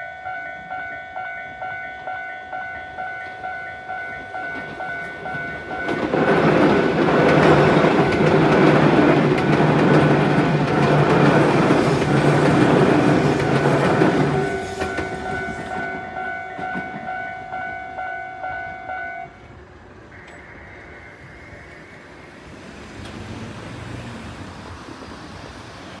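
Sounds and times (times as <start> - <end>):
crossing warning bell ringing: 0.0 - 22.3
train passing: 0.0 - 26.0.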